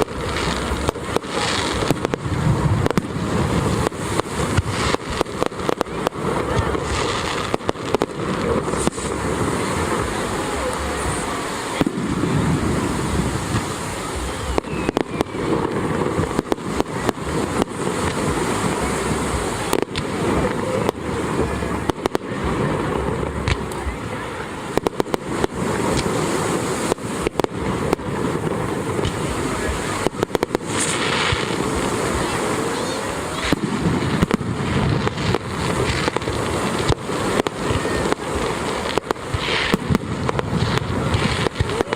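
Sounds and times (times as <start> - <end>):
firework bangs and crackles: 0.0 - 41.9
rumble of bursting fireworks: 0.0 - 41.9.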